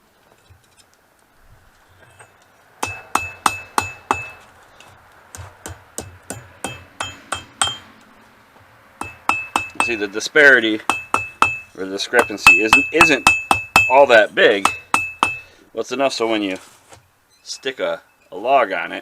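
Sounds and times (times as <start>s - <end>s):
hammer striking hot steel on anvil: 2.8s - 4.4s, 5.6s - 7.9s, 9.0s - 10.2s, 10.8s - 15.5s.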